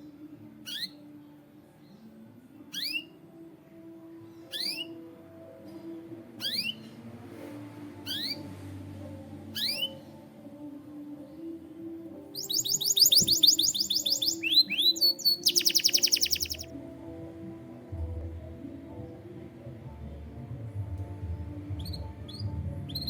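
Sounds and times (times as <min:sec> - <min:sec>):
soft background music: 0:00.0 - 0:23.0
canary singing: 0:00.6 - 0:01.1, 0:02.7 - 0:03.2, 0:04.5 - 0:05.0, 0:06.4 - 0:06.9, 0:08.0 - 0:08.5, 0:09.5 - 0:10.0, 0:12.3 - 0:16.7.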